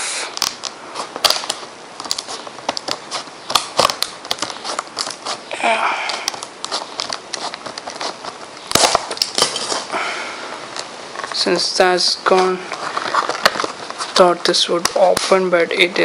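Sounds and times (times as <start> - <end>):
packaging crackling and crinkling: 0.3 - 10.0, 10.6 - 16.0
scissors cutting packaging: 0.4 - 5.5, 6.1 - 9.9.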